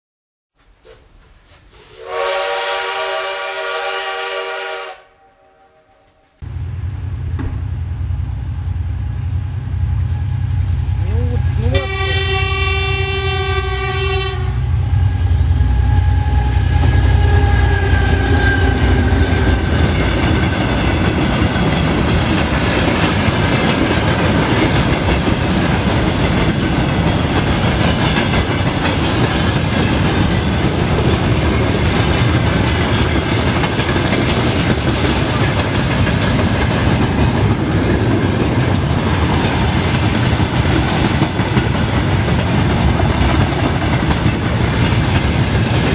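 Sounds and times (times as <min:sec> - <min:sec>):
train horn: 0:02.0 - 0:06.4, 0:11.1 - 0:19.7
train wheels clattering on rails: 0:17.4 - 0:45.9.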